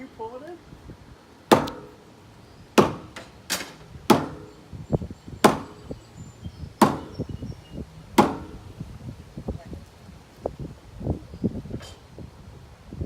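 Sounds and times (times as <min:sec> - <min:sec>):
sledgehammer striking wall: 0:01.5 - 0:02.0, 0:02.8 - 0:04.6, 0:05.4 - 0:05.9, 0:06.8 - 0:07.2, 0:08.2 - 0:08.7.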